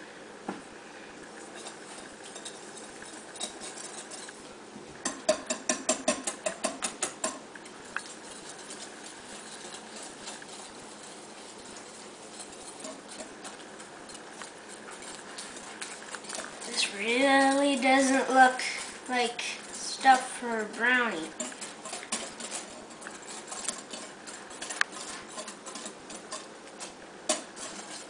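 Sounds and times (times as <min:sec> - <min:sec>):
whisk tapping against bowl: 0:05.0 - 0:16.7, 0:21.3 - 0:28.0.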